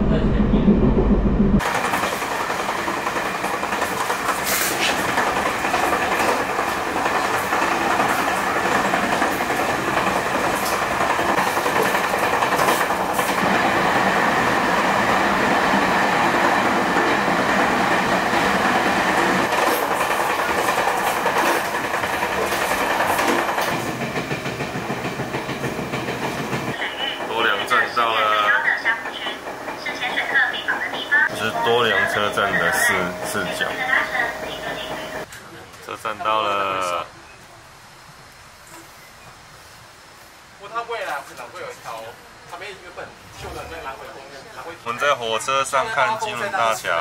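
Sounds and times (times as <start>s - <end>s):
train running on track: 0.0s - 35.3s.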